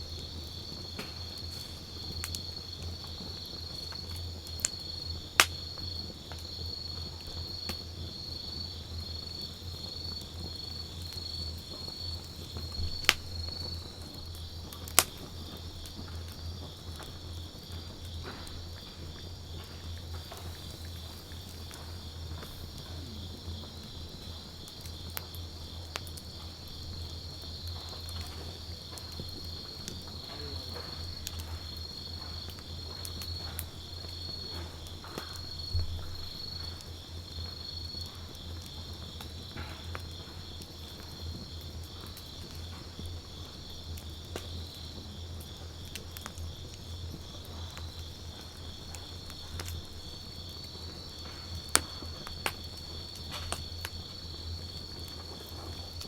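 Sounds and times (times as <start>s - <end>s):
sharp fire pops: 0.0s - 6.5s, 10.2s - 43.5s, 46.0s - 56.0s
campfire crackling: 0.0s - 56.0s
insects trilling: 0.0s - 56.0s.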